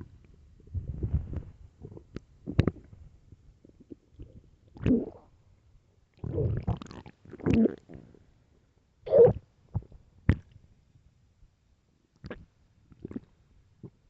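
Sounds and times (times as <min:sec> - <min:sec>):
stomach growling: 0:00.7 - 0:03.0, 0:03.7 - 0:05.3, 0:06.2 - 0:08.2, 0:12.2 - 0:14.0.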